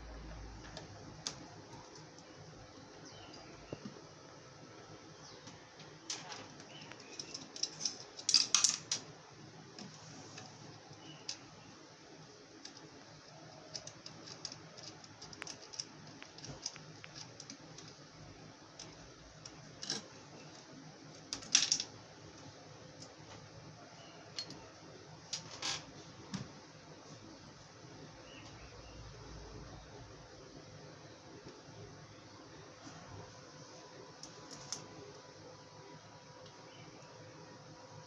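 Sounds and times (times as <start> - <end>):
small hard parts clicking and rattling: 5.4 - 9.2, 12.6 - 18.1, 18.7 - 22.0.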